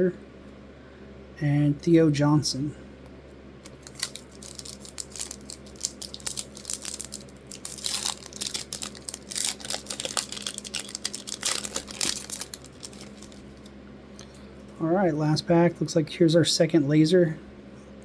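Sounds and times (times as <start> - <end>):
foil wrapper crinkling and tearing: 3.6 - 13.7.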